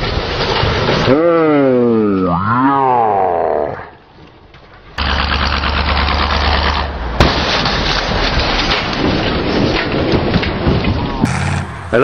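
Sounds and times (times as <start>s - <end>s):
rough rumble with crackles: 0.0s - 1.3s, 4.0s - 11.3s
vehicle engine running: 5.0s - 7.0s.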